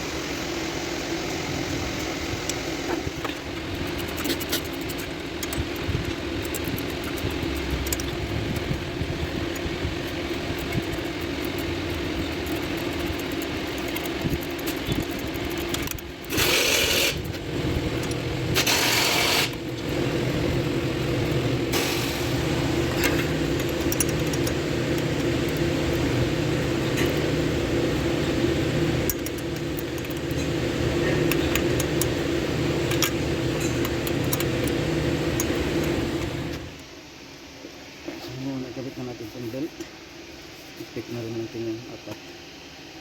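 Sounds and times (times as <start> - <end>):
machine humming: 0.0 - 37.1
loud hissing bursts: 21.7 - 23.0.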